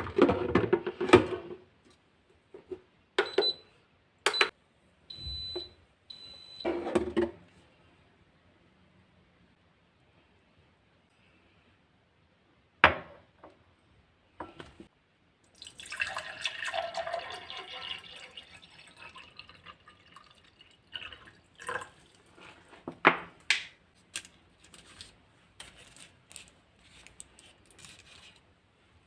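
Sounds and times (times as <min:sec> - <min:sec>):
liquid pouring into container: 0:15.5 - 0:22.7.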